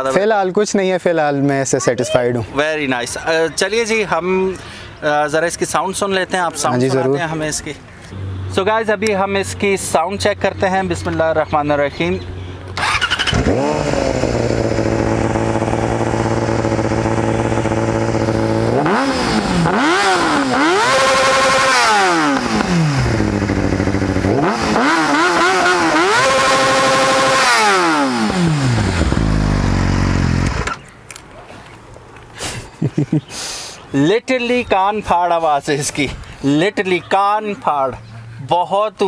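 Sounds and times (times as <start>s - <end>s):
motorcycle engine revving: 12.7s - 30.9s.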